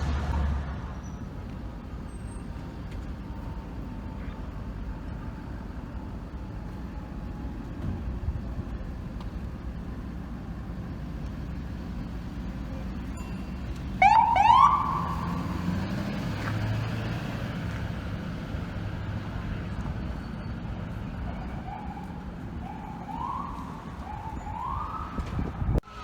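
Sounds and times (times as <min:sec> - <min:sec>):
city traffic rumble: 0:00.0 - 0:26.0
electronic siren whoops: 0:14.0 - 0:15.6, 0:21.4 - 0:25.8.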